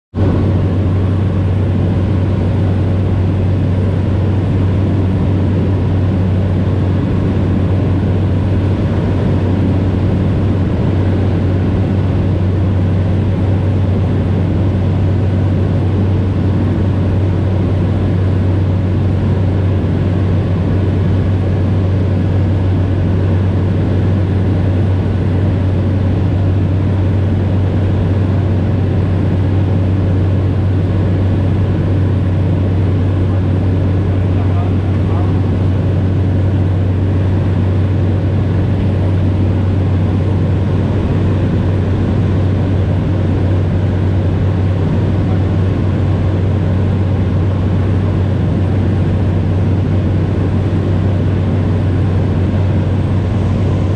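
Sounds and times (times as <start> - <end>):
propeller aircraft engine droning: 0.1 - 53.9.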